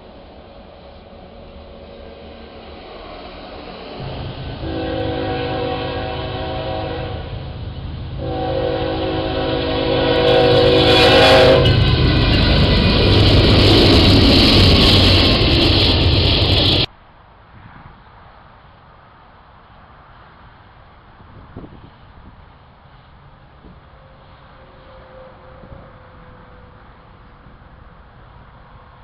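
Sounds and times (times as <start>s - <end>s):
train passing close by: 0.0s - 29.0s
train rumbling: 0.0s - 29.0s
train chime horn: 4.0s - 7.6s, 8.2s - 13.6s, 23.9s - 26.8s.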